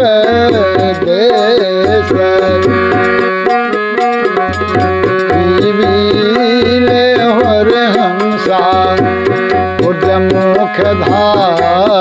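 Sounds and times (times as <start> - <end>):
man singing: 0.0 - 3.5, 4.6 - 12.0.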